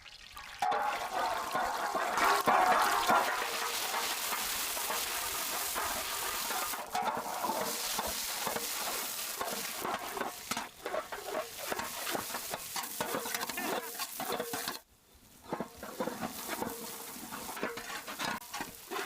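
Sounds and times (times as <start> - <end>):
frying sizzle: 0.0 - 19.0
utensil scraping frying pan: 0.6 - 19.0.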